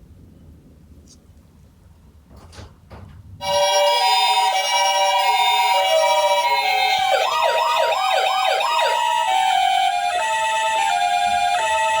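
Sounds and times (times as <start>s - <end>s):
electronic ambulance siren: 3.4s - 12.0s.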